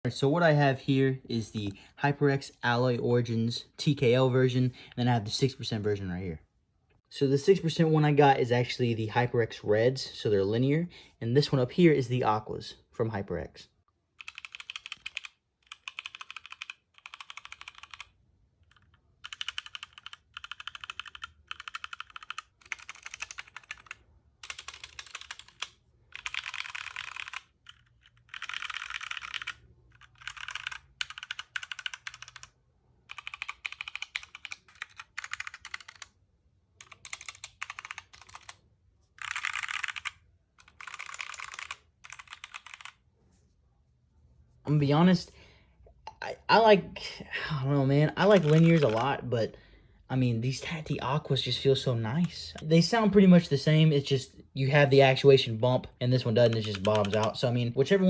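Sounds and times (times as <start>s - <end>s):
mechanical keyboard typing: 14.2s - 36.1s, 36.8s - 38.6s, 39.2s - 43.0s, 48.2s - 49.2s, 56.4s - 57.4s.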